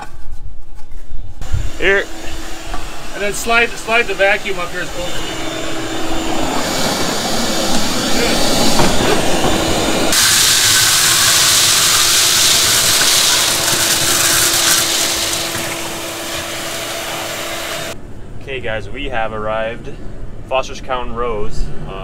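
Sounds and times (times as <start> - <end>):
air rushing through hose: 1.4 - 18.0
loud hiss: 1.4 - 18.0
vacuum motor hum: 1.4 - 18.0.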